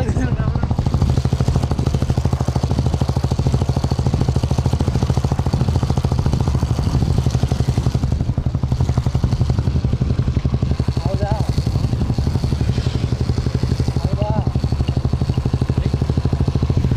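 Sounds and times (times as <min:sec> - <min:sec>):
motorcycle engine idling: 0:00.0 - 0:16.9.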